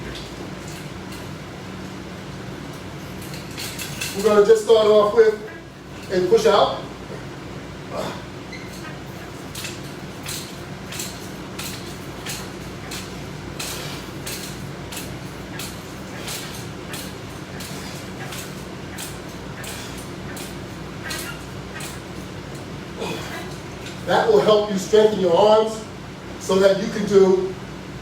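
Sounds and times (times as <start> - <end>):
low room hum: 0.0 - 28.0
resistance band creaking strokes: 2.7 - 7.2, 7.8 - 24.8.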